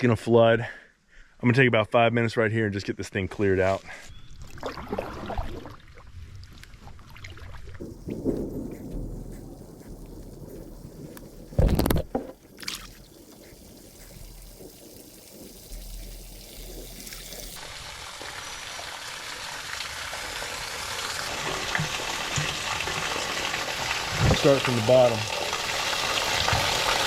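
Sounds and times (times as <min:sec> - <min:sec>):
water running: 0:07.8 - 0:27.0.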